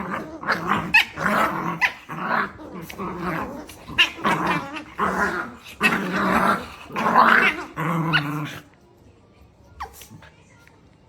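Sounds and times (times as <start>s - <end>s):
dog growling: 0.0s - 8.7s.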